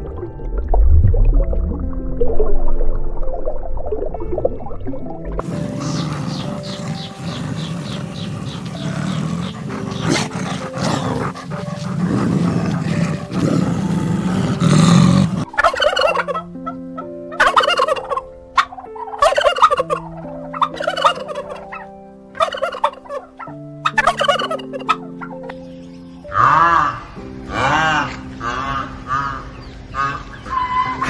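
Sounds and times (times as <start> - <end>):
background music: 0.0 - 31.0
poultry calling: 5.5 - 14.8, 15.5 - 25.4, 26.2 - 31.0.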